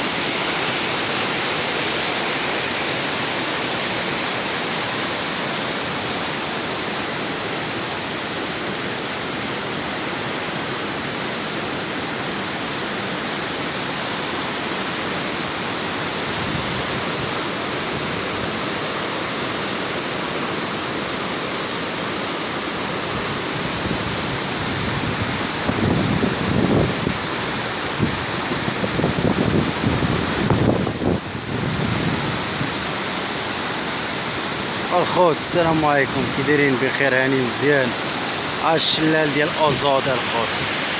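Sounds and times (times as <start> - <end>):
waterfall rushing: 0.0 - 40.9
wind buffeting microphone: 23.6 - 32.8.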